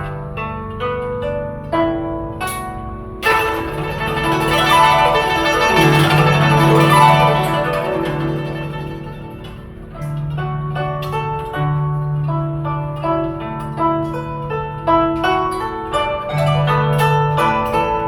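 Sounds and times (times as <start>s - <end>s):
guzheng plucked notes: 0.0s - 18.0s
wash of ringing strings: 3.2s - 9.7s.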